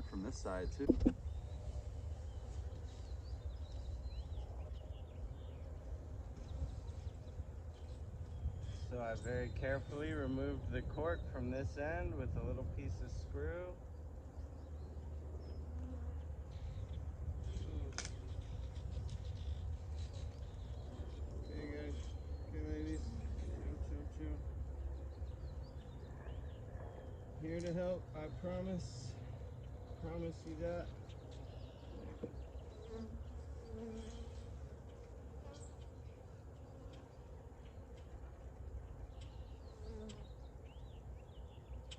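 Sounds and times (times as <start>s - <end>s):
honeybees buzzing: 12.8s - 41.8s
bee flying close by: 32.0s - 38.1s.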